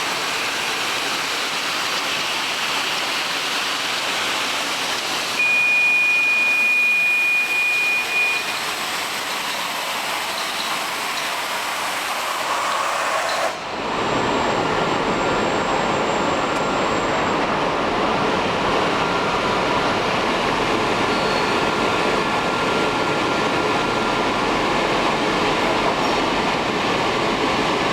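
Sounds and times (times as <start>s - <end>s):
printing machine running: 6.4s - 27.9s.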